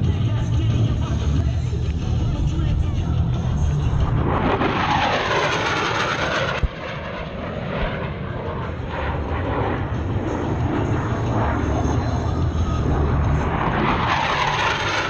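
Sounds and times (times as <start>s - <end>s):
military jet passing low: 2.7s - 15.0s.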